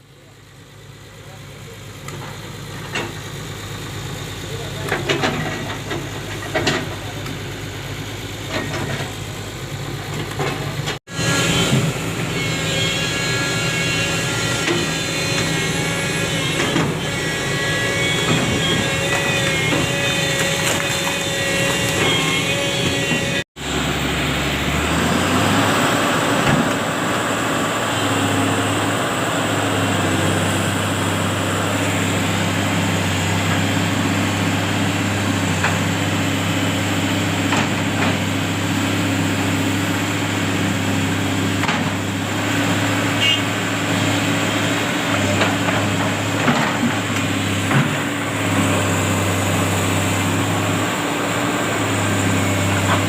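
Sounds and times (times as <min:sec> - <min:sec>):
heavy diesel engine running: 0:00.0 - 0:53.0
knocks and clanks: 0:04.8 - 0:07.4, 0:18.0 - 0:23.4.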